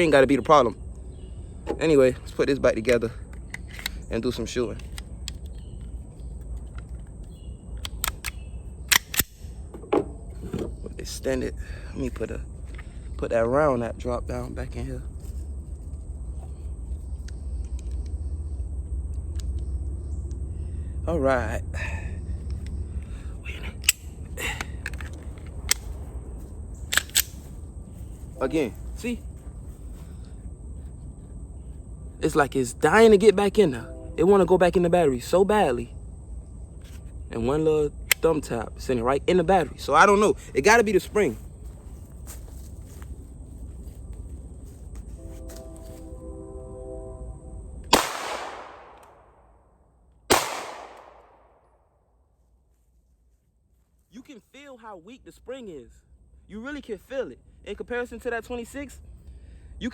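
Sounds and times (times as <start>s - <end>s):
gun handling noise: 3.2s - 10.9s, 23.8s - 28.3s
pistol slide clicks: 3.3s - 4.1s, 7.8s - 9.5s, 24.8s - 25.9s, 26.9s - 27.4s
pistol shots echoing: 47.9s - 49.2s, 50.3s - 51.5s.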